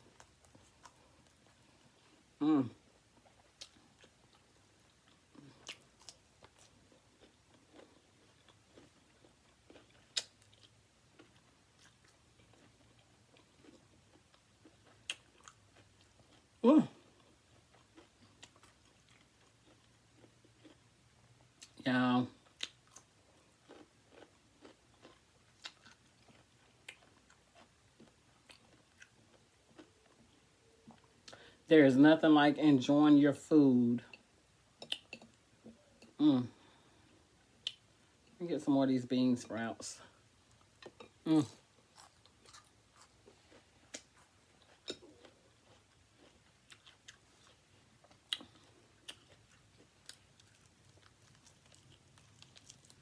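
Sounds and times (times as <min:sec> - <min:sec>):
person chewing food: 0:00.0 - 0:21.8, 0:22.4 - 0:31.6, 0:34.0 - 0:38.4, 0:40.0 - 0:53.0.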